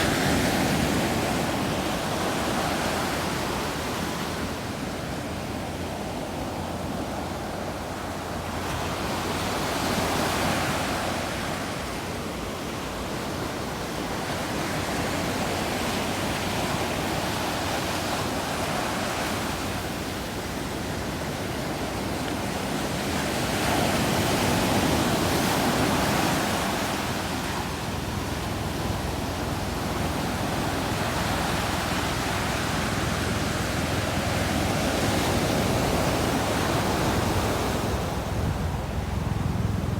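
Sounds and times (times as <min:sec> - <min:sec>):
ocean surf breaking on sand: 0:00.0 - 0:39.9.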